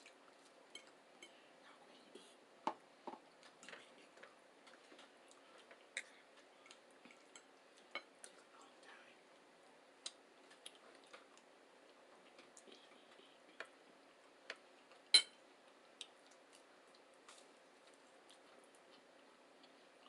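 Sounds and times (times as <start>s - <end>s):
chewing and mouth noises: 3.3s - 8.7s, 10.0s - 13.7s, 14.5s - 20.0s.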